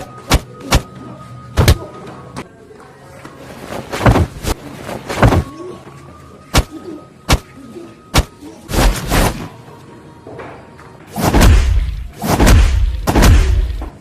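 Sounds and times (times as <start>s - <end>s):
punch and kick hits: 0.3s - 0.9s, 4.0s - 5.5s, 8.2s - 9.4s, 11.2s - 14.0s.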